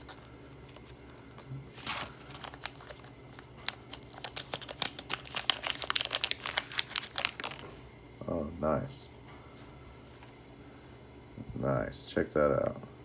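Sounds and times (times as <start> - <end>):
plastic packaging crinkling: 0.0 - 7.8.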